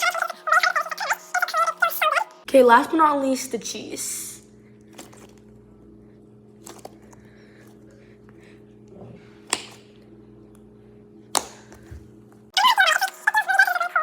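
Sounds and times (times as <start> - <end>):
squishy toy crunching: 4.9 - 5.6, 6.6 - 7.3.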